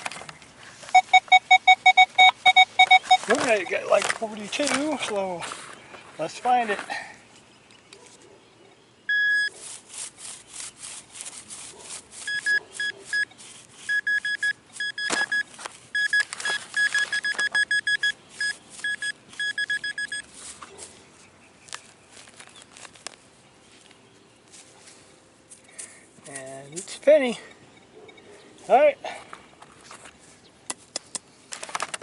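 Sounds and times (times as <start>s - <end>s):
digging in soil: 0.0s - 7.2s, 9.2s - 27.1s
metal detector beeping: 0.9s - 4.1s, 9.1s - 9.5s, 12.2s - 20.3s.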